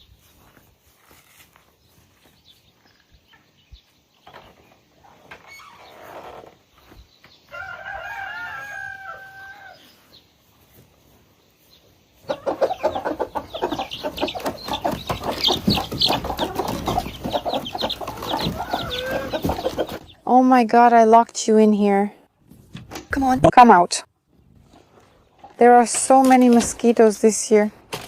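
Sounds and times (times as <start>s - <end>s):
rooster crowing: 7.5s - 9.9s, 18.5s - 19.4s
chickens clucking and squawking: 11.7s - 20.2s.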